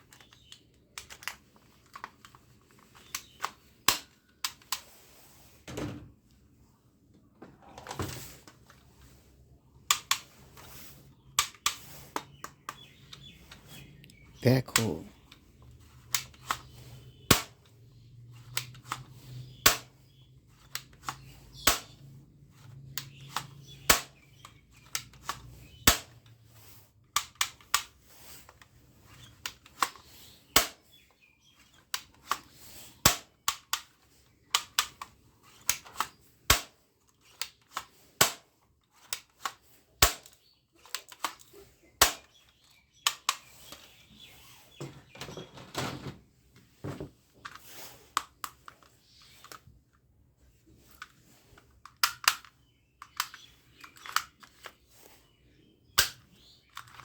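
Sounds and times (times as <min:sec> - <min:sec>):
toy guns snapping and clicking: 0:00.0 - 0:04.9, 0:09.8 - 0:13.9, 0:14.7 - 0:17.7, 0:18.4 - 0:26.4, 0:27.1 - 0:44.2, 0:47.4 - 0:49.7, 0:50.8 - 0:54.8, 0:56.0 - 0:57.0.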